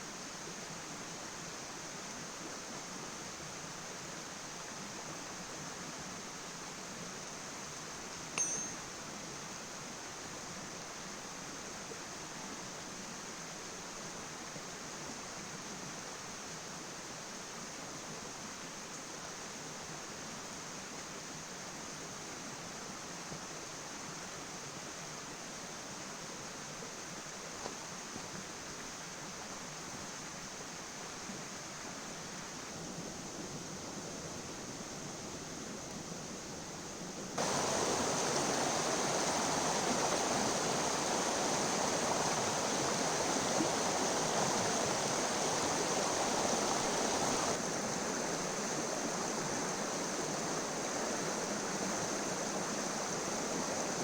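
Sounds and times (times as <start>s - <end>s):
river water rushing: 37.4s - 54.0s.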